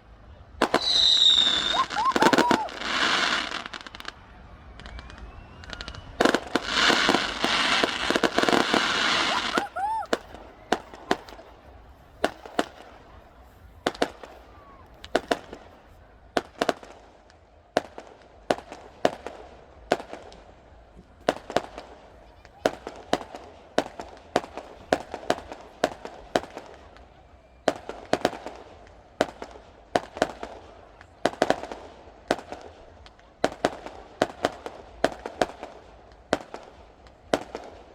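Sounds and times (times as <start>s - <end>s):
fireworks bangs: 0.6s - 4.2s, 4.8s - 17.0s
fireworks crackling: 0.6s - 4.2s, 4.8s - 17.1s.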